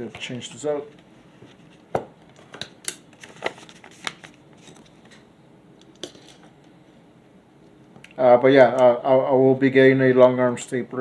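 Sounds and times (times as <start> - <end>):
paper rustling: 3.2 - 5.2.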